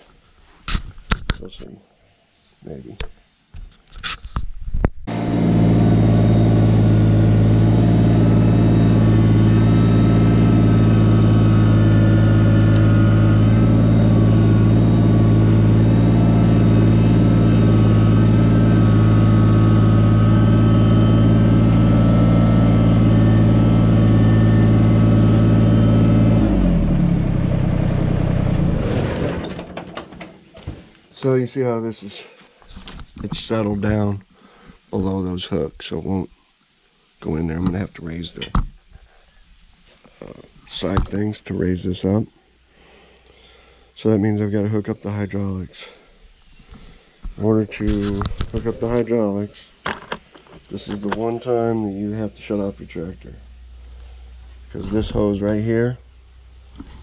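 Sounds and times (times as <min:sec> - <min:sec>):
tractor diesel engine running: 0:05.1 - 0:30.4.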